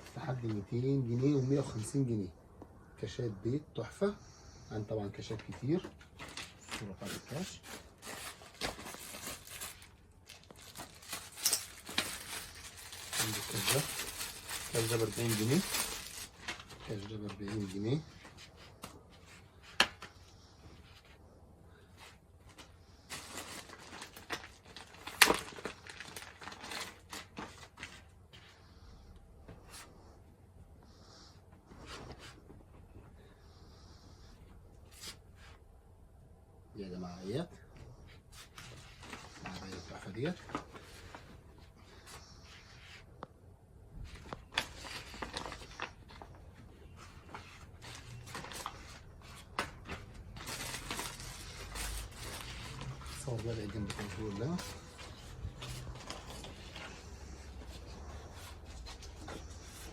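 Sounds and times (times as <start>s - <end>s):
clothes rustling and crinkling: 5.2s - 30.8s, 31.4s - 33.4s, 37.6s - 59.9s
clothing rustling: 6.1s - 19.4s.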